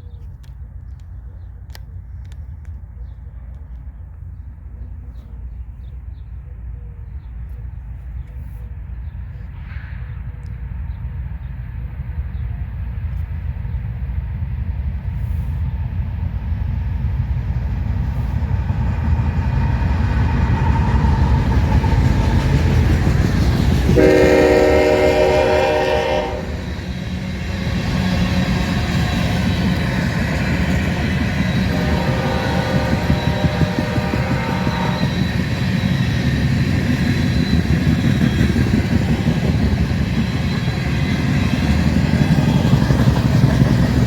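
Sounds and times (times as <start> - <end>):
freight train rumbling past: 1.8 - 44.0
locomotive air horn blasts: 23.8 - 26.8, 30.6 - 35.4.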